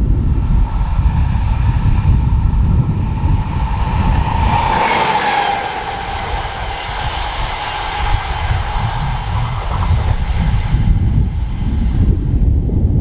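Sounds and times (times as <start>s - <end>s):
electric train passing: 0.0s - 12.5s
wind rumble on microphone: 0.0s - 13.0s.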